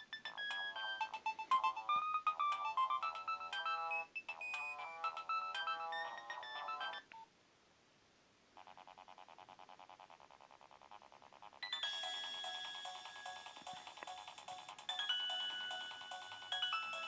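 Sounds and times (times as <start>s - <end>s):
phone ringtone melody: 0.0s - 7.1s, 11.6s - 17.0s.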